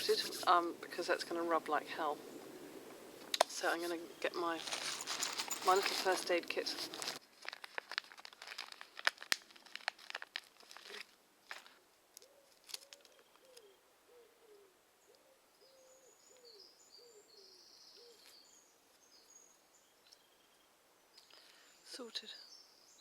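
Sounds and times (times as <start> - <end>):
packaging crinkling: 4.5 - 11.8, 12.5 - 13.5
bird cooing: 12.2 - 18.5
faint high bird chirps: 12.2 - 23.0.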